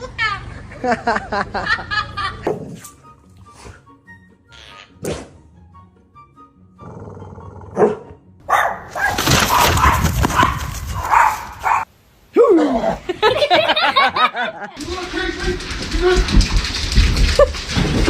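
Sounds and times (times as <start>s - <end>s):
dog barking loudly: 7.8s - 11.9s.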